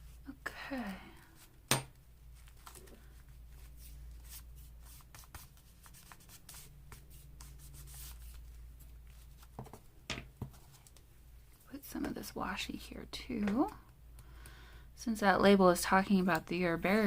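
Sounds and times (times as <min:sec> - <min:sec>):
paper rubbing and rustling: 0:02.3 - 0:09.8.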